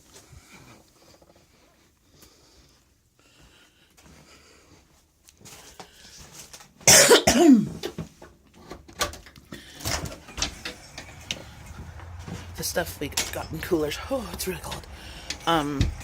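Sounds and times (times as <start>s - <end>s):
person coughing loudly: 6.8s - 7.9s
clicks and knocks of movement: 7.8s - 13.9s, 14.5s - 16.0s.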